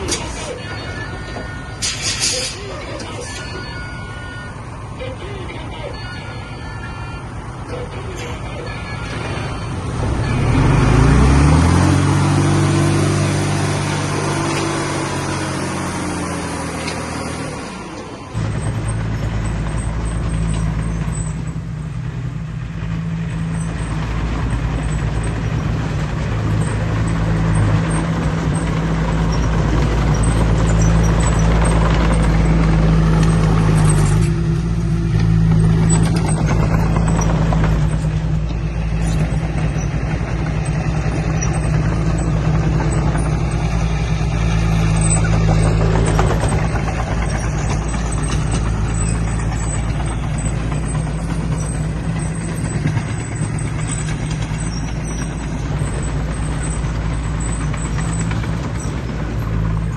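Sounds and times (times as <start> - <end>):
heavy diesel engine running: 0.0 - 59.9.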